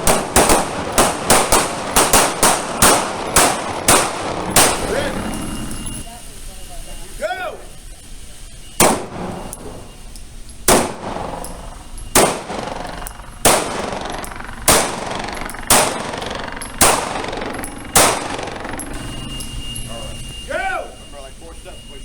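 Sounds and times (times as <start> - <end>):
pistol shots echoing: 0.0 - 6.0, 8.8 - 10.0, 10.6 - 19.7.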